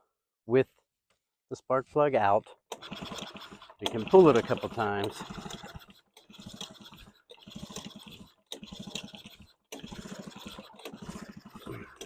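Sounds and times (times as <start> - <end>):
engine spinning with rapid ticking: 2.7 - 12.0.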